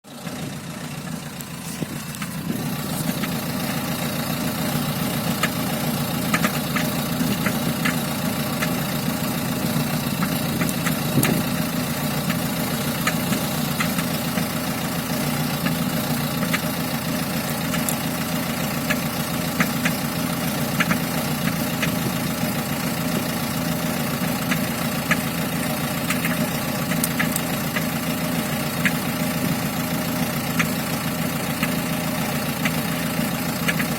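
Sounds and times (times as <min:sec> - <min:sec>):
diesel engine idling: 0:00.0 - 0:33.9
sharp knocking tick: 0:05.4 - 0:05.6, 0:06.3 - 0:08.0, 0:08.6 - 0:08.8, 0:10.2 - 0:11.4, 0:12.2 - 0:12.4, 0:13.0 - 0:14.5, 0:16.4 - 0:16.7, 0:17.6 - 0:18.0, 0:18.8 - 0:20.0, 0:20.7 - 0:22.2, 0:24.4 - 0:25.3, 0:26.0 - 0:27.9, 0:28.8 - 0:29.0, 0:30.5 - 0:30.8, 0:32.6 - 0:32.8, 0:33.6 - 0:33.9.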